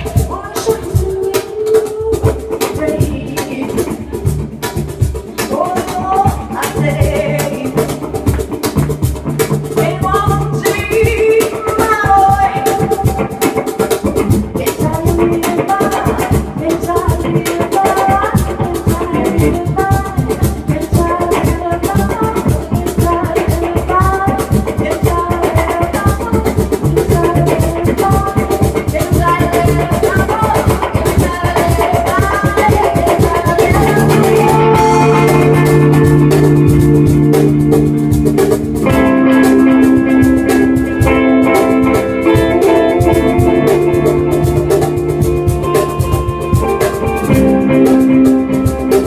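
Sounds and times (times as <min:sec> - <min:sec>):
drums: 0:00.0 - 0:49.0
lead guitar line: 0:00.0 - 0:49.0
bass: 0:02.0 - 0:49.0
held chords: 0:33.8 - 0:49.0.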